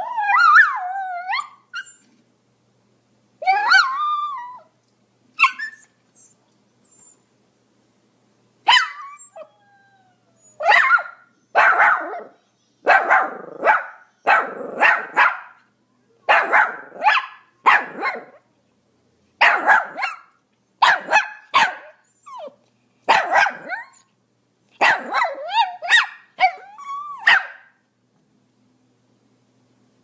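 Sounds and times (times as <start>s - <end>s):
dog yelping: 0.0s - 2.1s, 3.4s - 4.7s, 5.4s - 6.4s, 8.7s - 9.6s, 10.4s - 12.3s, 19.4s - 24.1s, 24.8s - 27.7s
small dog barking: 8.7s - 9.2s, 10.6s - 15.7s, 16.3s - 18.4s, 19.4s - 22.5s, 23.1s - 24.0s, 24.8s - 27.8s.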